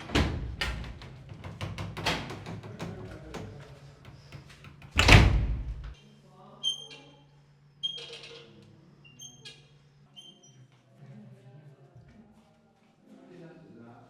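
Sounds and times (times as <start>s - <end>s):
deep percussion thump: 5.0s - 6.0s.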